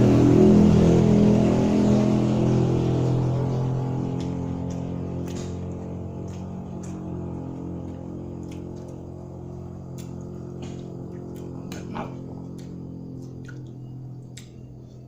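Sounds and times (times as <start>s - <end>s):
steady low hum: 0.0s - 15.0s
wet chewing and lip smacks: 4.2s - 9.2s, 9.9s - 15.0s.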